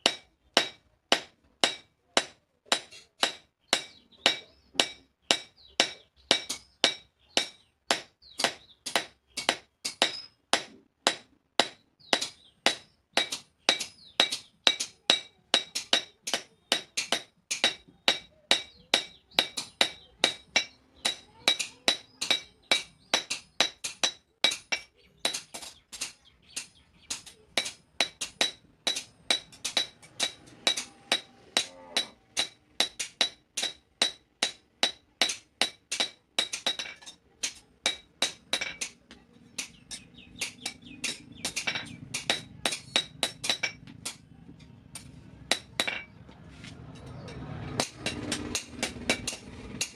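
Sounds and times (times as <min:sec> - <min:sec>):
hammer striking steel on anvil: 0:00.0 - 0:46.2, 0:46.9 - 0:49.9.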